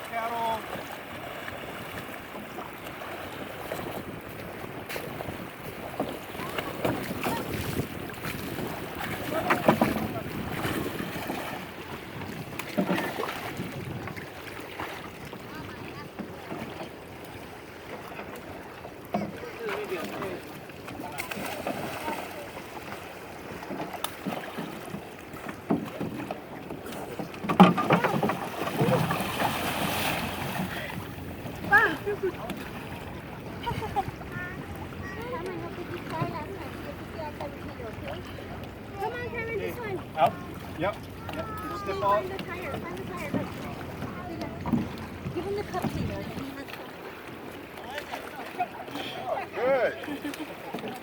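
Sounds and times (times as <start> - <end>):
paddles splashing in water: 0.0 - 51.0
wind noise on microphone: 3.7 - 14.2, 42.6 - 46.6.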